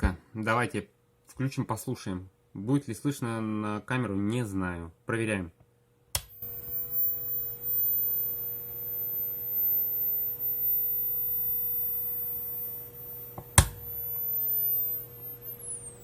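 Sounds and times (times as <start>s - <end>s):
sharp click: 6.1s - 6.4s
power supply high-pitched whine: 6.2s - 16.0s
low hum: 6.3s - 16.0s.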